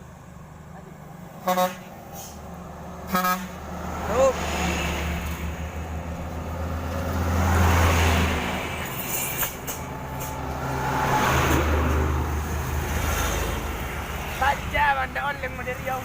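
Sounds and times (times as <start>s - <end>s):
heavy vehicles passing: 0.0s - 16.0s.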